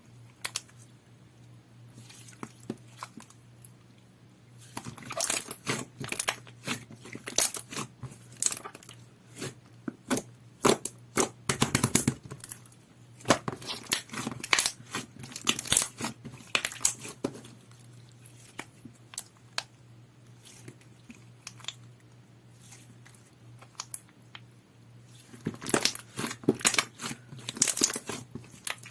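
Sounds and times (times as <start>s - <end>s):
slime popping and crackling: 13.3s - 17.2s, 25.4s - 28.9s.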